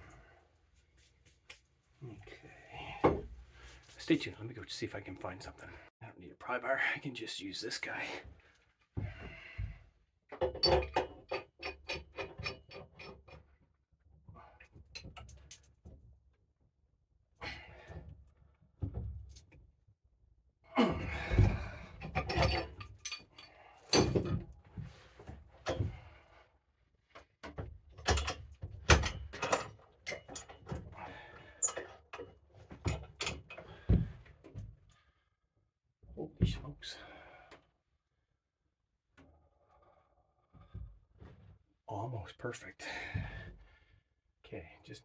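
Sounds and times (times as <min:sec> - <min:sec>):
knocks and metal clanks: 0:21.2 - 0:24.4, 0:28.0 - 0:30.8.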